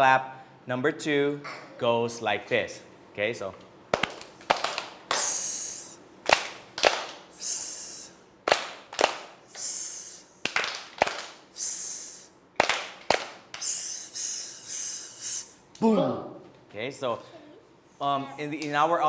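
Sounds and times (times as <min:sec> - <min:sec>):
hand claps: 0:03.9 - 0:05.4, 0:06.2 - 0:07.3, 0:08.4 - 0:09.8, 0:10.4 - 0:11.5, 0:12.6 - 0:13.9
mouth-made hissing shh: 0:07.4 - 0:08.2, 0:09.5 - 0:10.4, 0:11.6 - 0:12.4, 0:13.6 - 0:15.6.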